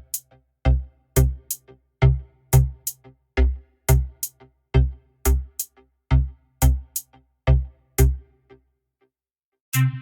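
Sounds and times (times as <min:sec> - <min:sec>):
electronic music with drum machine: 0:00.0 - 0:08.6, 0:09.8 - 0:10.0.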